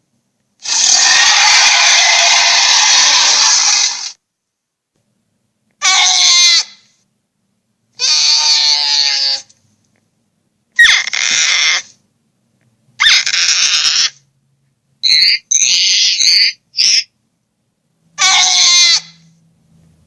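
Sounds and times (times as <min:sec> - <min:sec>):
giant creature cries: 0:00.6 - 0:04.1, 0:05.8 - 0:06.8, 0:08.0 - 0:09.5, 0:10.8 - 0:11.9, 0:13.0 - 0:14.2, 0:18.2 - 0:19.2.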